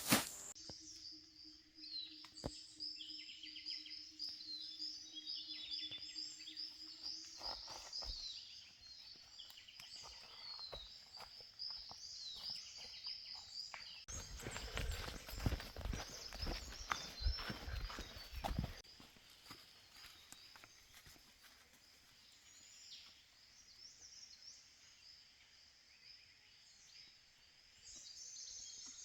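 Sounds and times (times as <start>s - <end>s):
small birds chirping: 0.3s - 29.0s.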